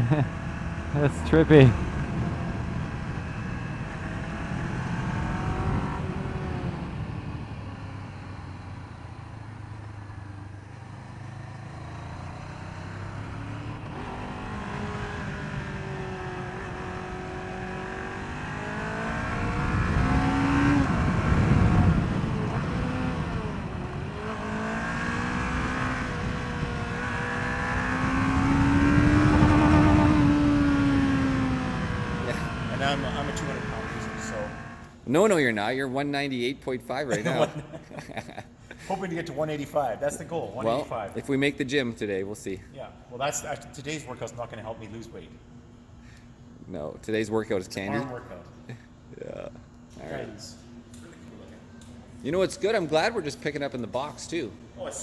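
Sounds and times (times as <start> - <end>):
vehicle engine accelerating: 0.0 - 35.0.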